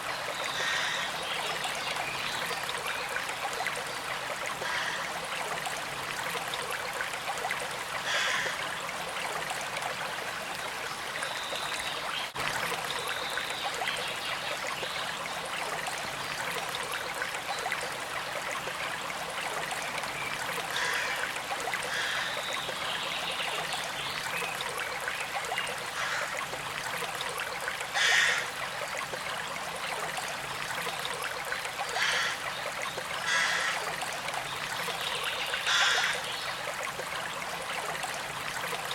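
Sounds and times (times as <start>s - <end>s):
small stream trickling: 0.0s - 38.9s.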